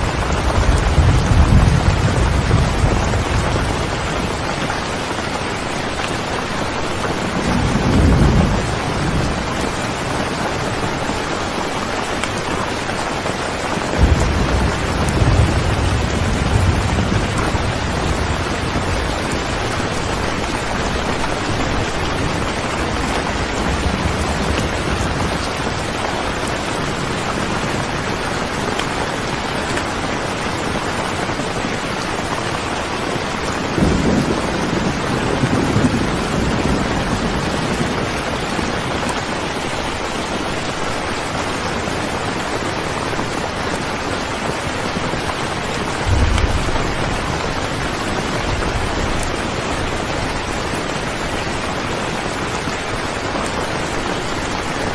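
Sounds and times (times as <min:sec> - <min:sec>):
thunder rumble: 0:00.0 - 0:05.1, 0:07.0 - 0:11.2, 0:13.7 - 0:27.9, 0:33.4 - 0:38.8, 0:45.8 - 0:51.2
steady rain: 0:00.0 - 0:54.9
thunder crack: 0:14.0 - 0:25.7, 0:46.1 - 0:48.9.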